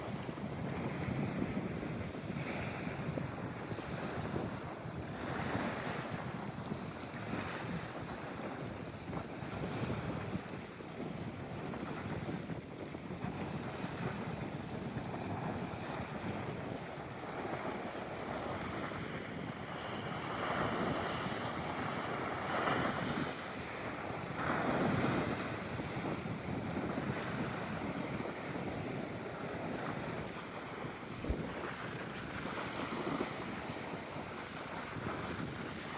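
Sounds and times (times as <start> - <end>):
wind buffeting the microphone: 0.0 - 35.9
sea waves: 13.7 - 35.9.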